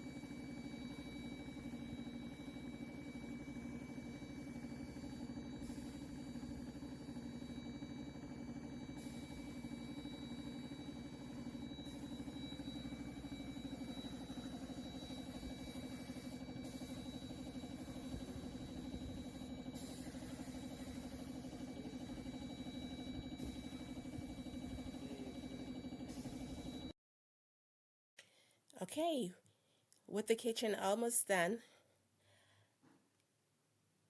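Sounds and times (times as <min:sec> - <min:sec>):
paint sprayer motor droning: 0:00.0 - 0:26.8.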